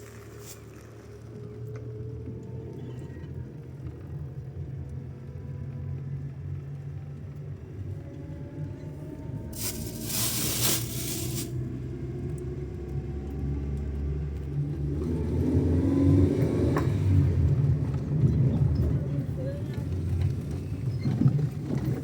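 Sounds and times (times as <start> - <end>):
vehicle engine low rumble: 0.0 - 22.0
loud rush of hiss: 9.6 - 11.6.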